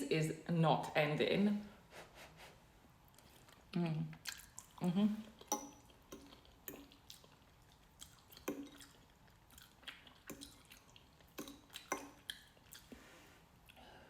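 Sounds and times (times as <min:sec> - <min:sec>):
person chewing: 0:03.1 - 0:13.0.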